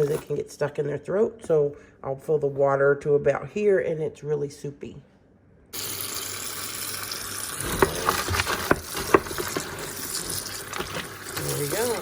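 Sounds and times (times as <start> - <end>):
water running into feed: 5.8 - 12.0.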